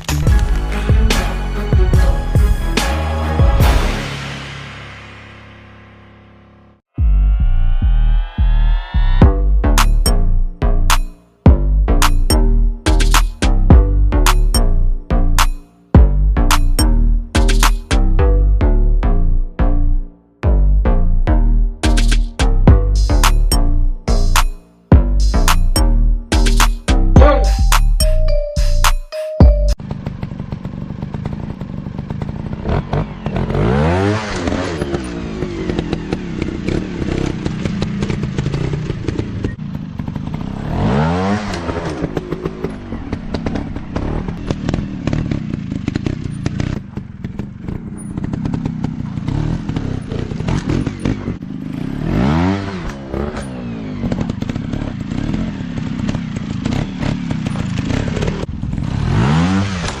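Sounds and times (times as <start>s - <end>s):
dirt bike engines revving: 29.9s - 60.0s.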